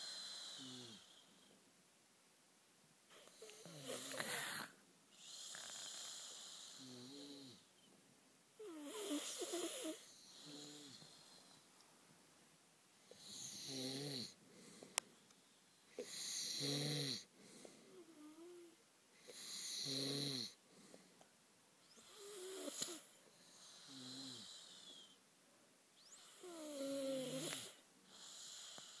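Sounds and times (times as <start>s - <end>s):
boys snoring: 0.0s - 1.2s, 3.4s - 7.6s, 8.6s - 11.4s, 13.1s - 14.4s, 16.0s - 17.3s, 19.3s - 20.6s, 21.9s - 25.1s, 26.1s - 29.0s.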